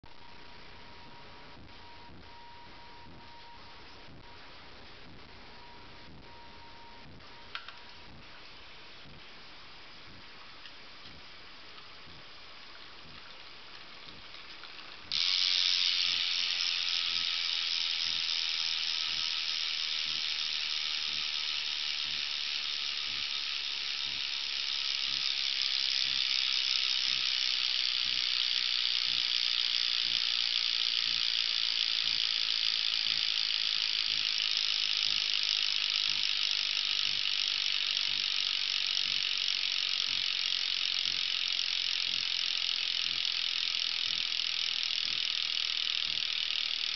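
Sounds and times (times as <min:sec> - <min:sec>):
bicycle freewheel ratcheting: 0:13.0 - 0:46.9.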